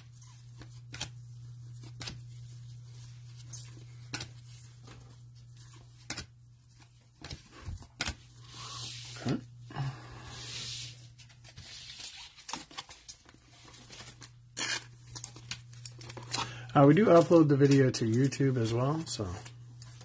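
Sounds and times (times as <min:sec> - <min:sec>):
cards rustling: 0:00.0 - 0:09.4, 0:10.3 - 0:20.0
cards clicking and tapping: 0:04.0 - 0:04.4, 0:06.0 - 0:06.3.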